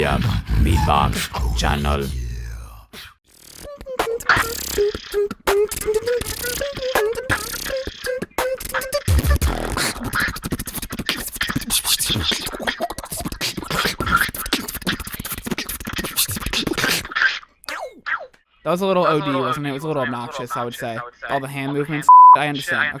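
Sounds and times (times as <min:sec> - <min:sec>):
person beatboxing: 0:00.0 - 0:17.9
hummed melody: 0:03.7 - 0:09.4.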